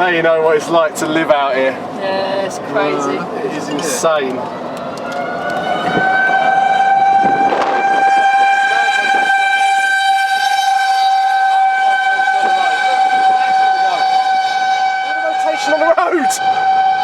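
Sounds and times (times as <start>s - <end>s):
warning siren steady tone: 4.6s - 17.0s.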